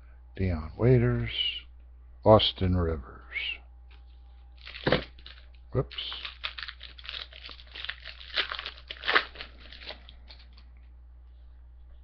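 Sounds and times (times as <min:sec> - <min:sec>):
wrapper tearing and crinkling: 0:04.6 - 0:10.6.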